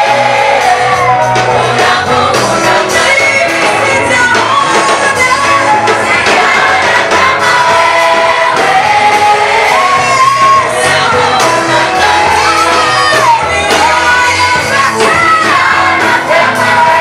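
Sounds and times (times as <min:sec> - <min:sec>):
steady bass line: 0:00.0 - 0:17.0
vocal group singing gospel: 0:00.0 - 0:17.0
congregation shouting: 0:05.4 - 0:17.0.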